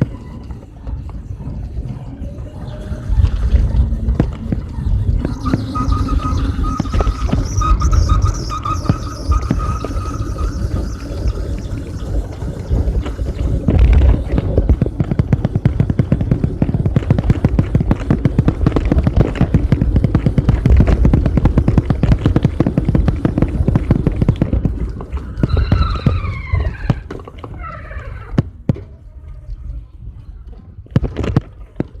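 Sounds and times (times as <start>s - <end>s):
bicycle rumbling on rough surface: 0.0s - 32.0s
falling squeals: 2.1s - 13.6s, 25.1s - 28.4s.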